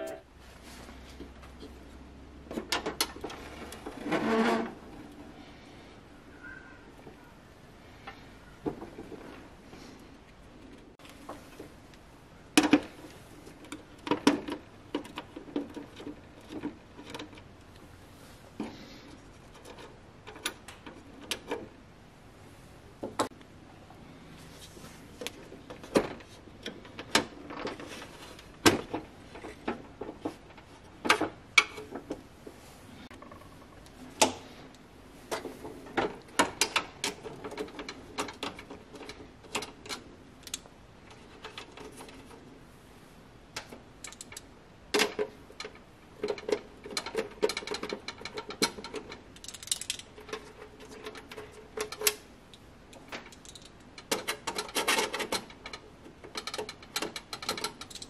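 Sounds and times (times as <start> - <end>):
metallic clicks and knocks: 43.6 - 58.0.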